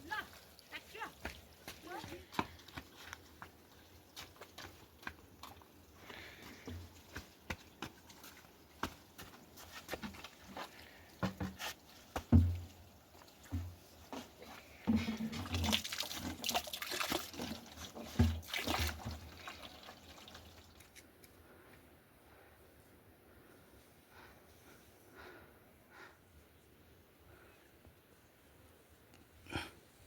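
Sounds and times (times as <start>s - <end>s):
liquid pouring and splashing: 14.8s - 21.0s.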